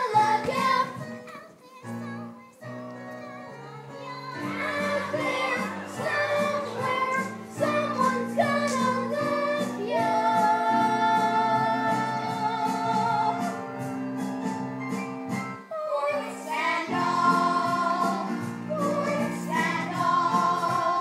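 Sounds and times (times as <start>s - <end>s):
instrumental accompaniment: 0.0s - 21.0s
voices singing together: 3.6s - 13.6s, 15.7s - 21.0s.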